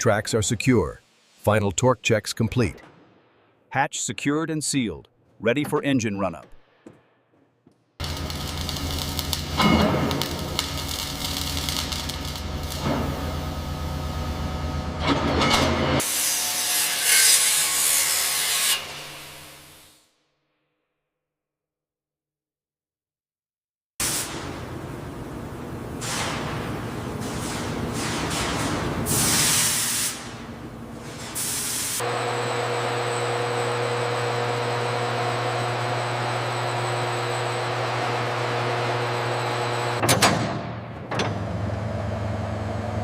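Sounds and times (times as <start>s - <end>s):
loud harsh hiss: 29.1s - 30.3s.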